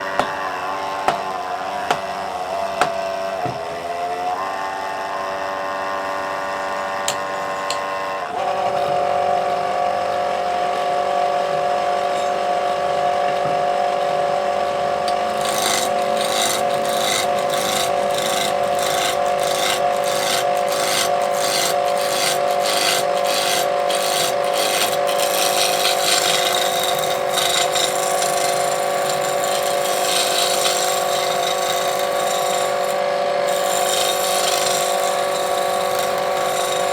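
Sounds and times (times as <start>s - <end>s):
wood lathe motor whine: 0.0s - 36.9s
turning tool hissing on wood: 15.3s - 36.9s.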